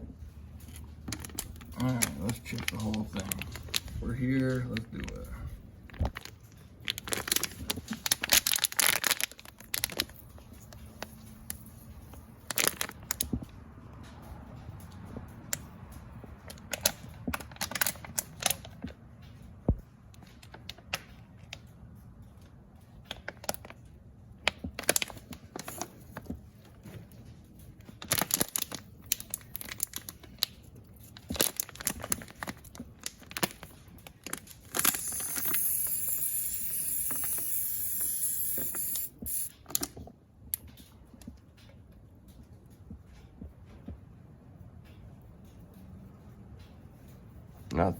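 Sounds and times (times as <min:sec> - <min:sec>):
clicks and crackles: 0:00.2 - 0:44.2
steady hiss: 0:34.8 - 0:39.6
spray bottle squirting: 0:34.8 - 0:39.7.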